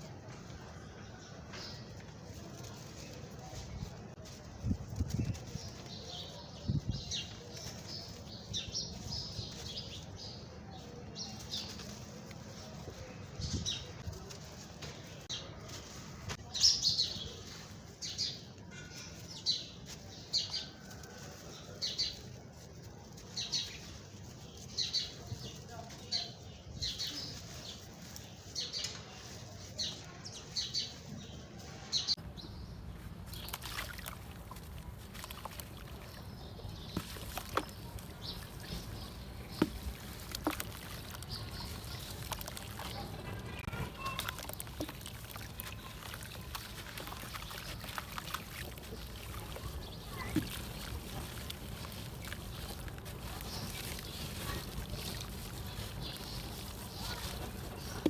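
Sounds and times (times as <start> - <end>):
water sloshing and trickling: 32.3 - 58.0
dirt and concrete cracking: 33.0 - 58.0.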